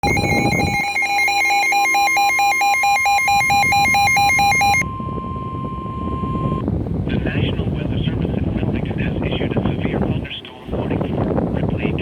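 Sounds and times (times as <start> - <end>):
rapidly pulsing electronic beep: 0.0 - 6.6
steady weather radio alarm tone: 0.0 - 6.6.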